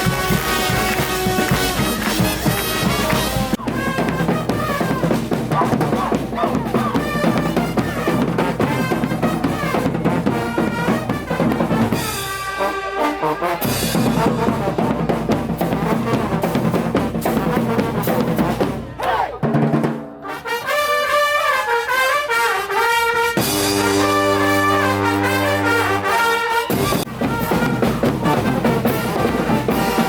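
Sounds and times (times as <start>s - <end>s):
drum kit: 0.0s - 12.6s, 13.6s - 20.3s, 23.4s - 26.1s
brass band playing: 0.0s - 30.0s.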